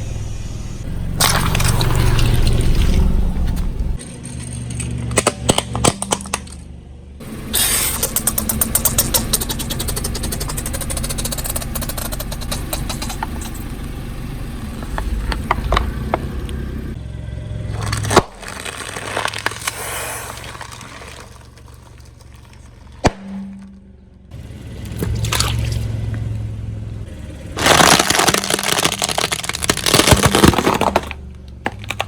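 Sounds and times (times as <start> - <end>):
car engine running low: 0.0 - 5.2, 6.2 - 32.0
tyre crushing objects: 17.7 - 23.8, 27.6 - 32.0
sharp crack: 17.7 - 23.9, 27.6 - 32.0.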